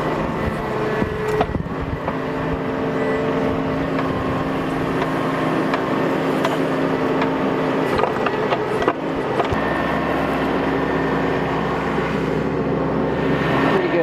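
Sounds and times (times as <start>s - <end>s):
excavator diesel engine running: 0.0s - 14.0s
sharp clicks and knocks: 4.9s - 9.6s.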